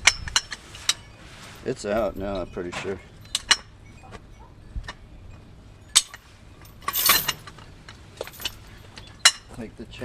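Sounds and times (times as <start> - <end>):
lifting chain rattle: 5.9 - 9.5.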